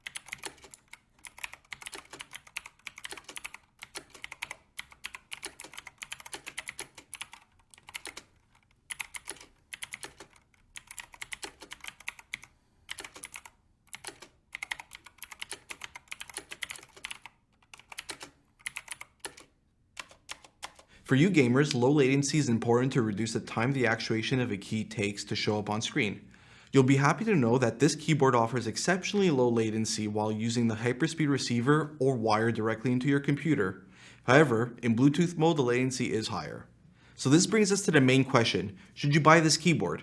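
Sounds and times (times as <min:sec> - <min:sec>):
mechanical keyboard typing: 0:00.0 - 0:20.9.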